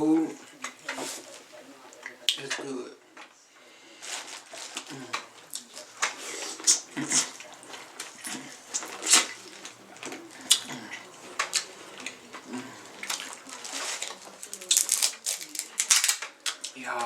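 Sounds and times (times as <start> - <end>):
wet chewing and slurping: 4.0 - 16.8.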